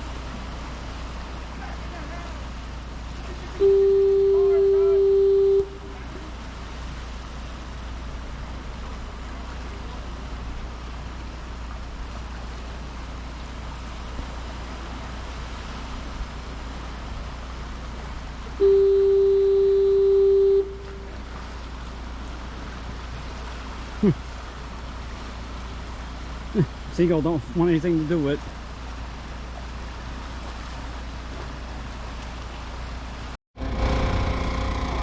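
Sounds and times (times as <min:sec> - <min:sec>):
sea waves: 0:00.0 - 0:35.0
wind: 0:00.0 - 0:35.0
fog horn blast: 0:03.6 - 0:06.3, 0:18.6 - 0:21.4, 0:33.6 - 0:35.0.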